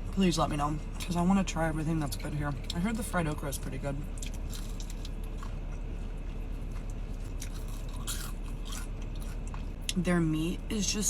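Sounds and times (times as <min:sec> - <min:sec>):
steady low hum: 0:00.0 - 0:11.0
chewing fried chicken: 0:04.1 - 0:10.0
crisp crunches: 0:04.2 - 0:09.6.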